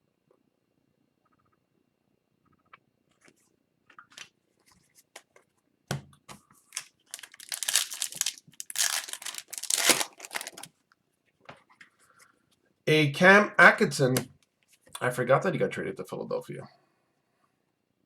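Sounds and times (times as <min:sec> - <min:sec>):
wrapper tearing and crinkling: 0:06.7 - 0:10.7.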